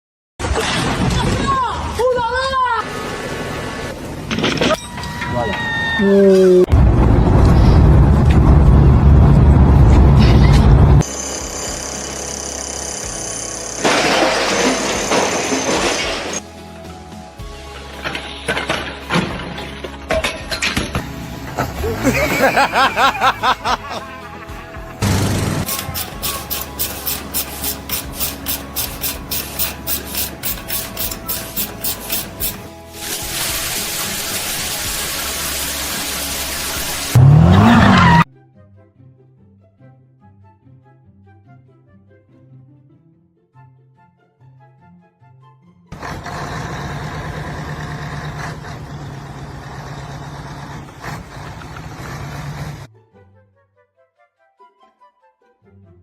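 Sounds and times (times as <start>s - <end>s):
heavy engine running: 6.7s - 16.4s, 24.8s - 32.9s, 45.9s - 52.9s
rasping scraping strokes by hand: 25.6s - 32.7s.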